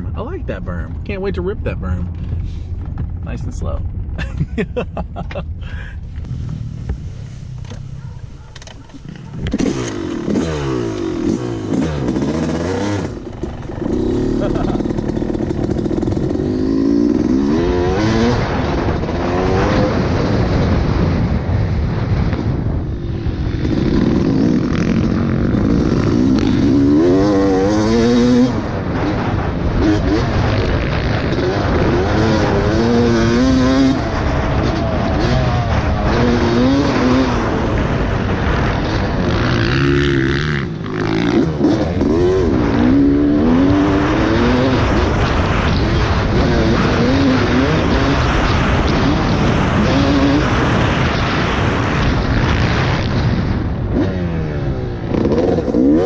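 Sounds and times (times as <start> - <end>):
two-stroke dirt bike engine revving: 8.9 - 21.2, 22.2 - 53.1, 53.8 - 56.0.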